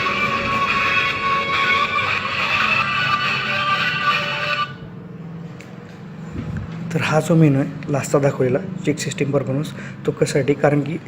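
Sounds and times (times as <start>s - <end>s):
musical phone ringtone: 0.0s - 4.8s.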